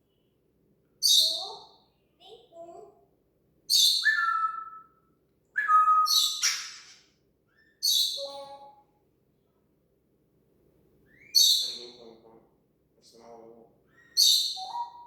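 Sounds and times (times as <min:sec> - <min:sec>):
parrot squawking and whistling: 0:03.7 - 0:04.9, 0:05.6 - 0:07.0.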